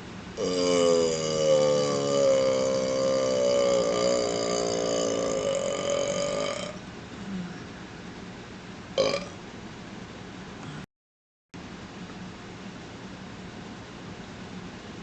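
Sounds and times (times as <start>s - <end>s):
man burping: 0.4s - 6.8s, 9.0s - 9.3s.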